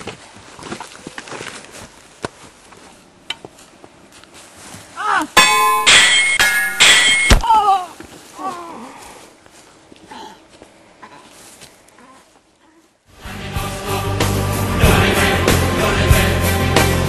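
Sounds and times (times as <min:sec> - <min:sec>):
sword blades clashing: 0:05.4 - 0:07.5.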